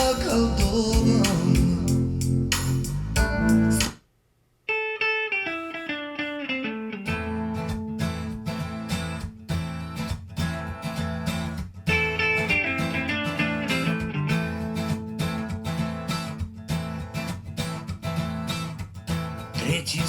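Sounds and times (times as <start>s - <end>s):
picked guitar line: 0.0s - 3.9s, 4.7s - 20.0s
bass and drums: 0.0s - 4.0s
recorded music over loudspeakers: 0.0s - 4.0s.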